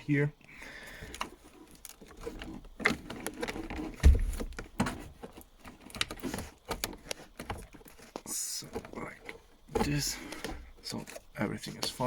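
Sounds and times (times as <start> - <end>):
heavy thump: 4.0 - 4.6.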